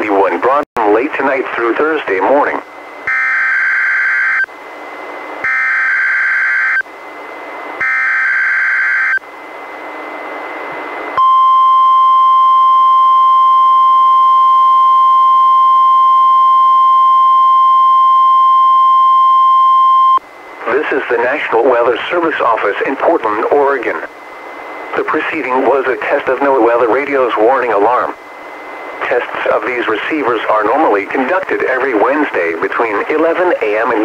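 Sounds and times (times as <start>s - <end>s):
radio hiss: 0.0s - 2.7s, 20.3s - 34.0s
steady warning alarm tone: 2.5s - 4.5s, 5.2s - 31.0s
buzzing digital header tones: 3.0s - 4.5s, 5.4s - 6.8s, 7.8s - 9.2s.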